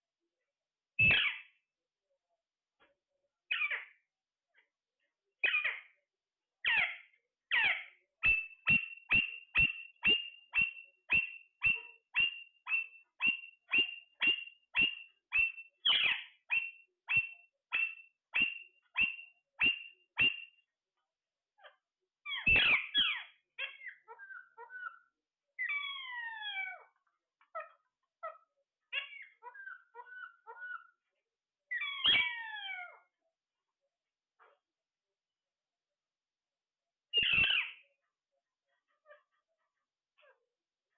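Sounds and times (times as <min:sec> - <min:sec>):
parrot squawk: 0:01.0 - 0:01.5, 0:03.5 - 0:04.0, 0:05.4 - 0:05.9, 0:06.6 - 0:20.5, 0:21.6 - 0:31.0, 0:31.7 - 0:33.1, 0:37.2 - 0:37.8
parrot whistled calls: 0:01.0 - 0:01.5, 0:07.6 - 0:20.6, 0:22.3 - 0:26.8, 0:27.5 - 0:30.9, 0:31.7 - 0:33.0, 0:37.1 - 0:37.8
parrot chirping: 0:01.0 - 0:01.6, 0:03.5 - 0:04.0, 0:05.4 - 0:05.9, 0:06.6 - 0:20.6, 0:21.6 - 0:31.1, 0:31.7 - 0:33.1, 0:37.1 - 0:38.0.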